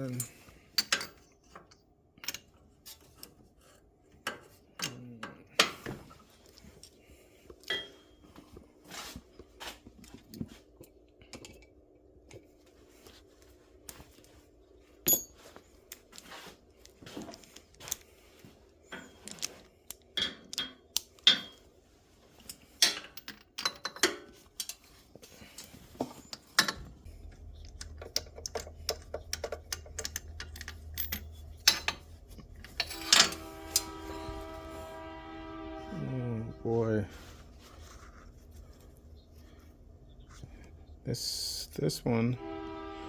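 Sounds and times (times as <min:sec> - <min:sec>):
low steady hum: 0:00.0 - 0:43.0
metal hand tools clinking: 0:15.1 - 0:15.4.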